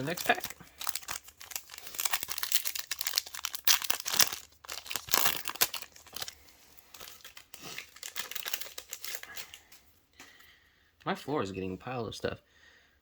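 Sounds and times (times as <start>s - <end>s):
foil wrapper crinkling and tearing: 0.0s - 9.8s
rustling of wrapper and cards: 0.0s - 9.9s.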